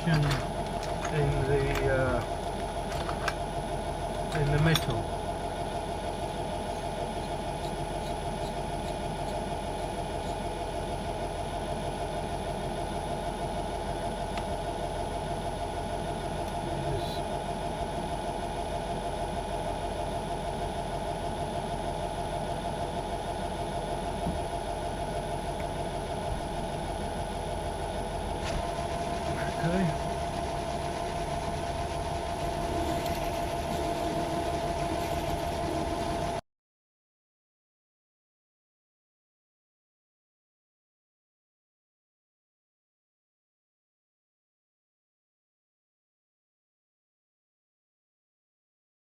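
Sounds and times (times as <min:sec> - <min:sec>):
lathe motor and gear hum: 0:00.0 - 0:36.4.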